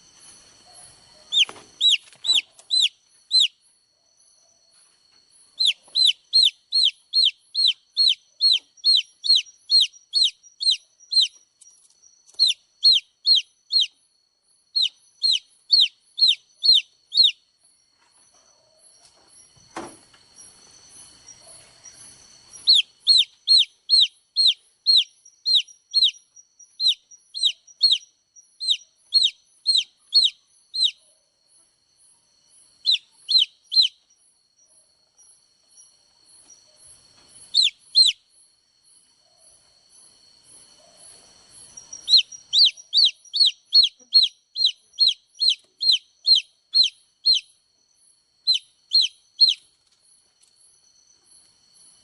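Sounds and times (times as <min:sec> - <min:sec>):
baby chicks peeping: 0:00.8 - 0:03.6, 0:05.6 - 0:14.0, 0:14.8 - 0:17.4, 0:21.5 - 0:31.0, 0:32.8 - 0:34.0, 0:37.4 - 0:38.2, 0:41.7 - 0:47.5, 0:48.5 - 0:50.0.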